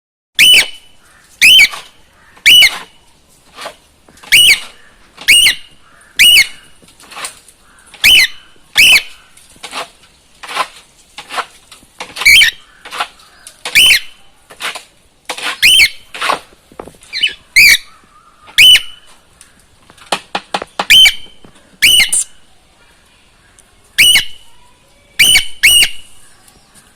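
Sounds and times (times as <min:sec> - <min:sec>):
cockatiel calling: 0:00.4 - 0:03.0, 0:04.3 - 0:06.8, 0:07.8 - 0:09.3, 0:12.2 - 0:12.8, 0:13.7 - 0:14.2, 0:15.6 - 0:16.0, 0:17.1 - 0:19.1, 0:20.8 - 0:22.4, 0:24.0 - 0:24.5, 0:25.2 - 0:26.3.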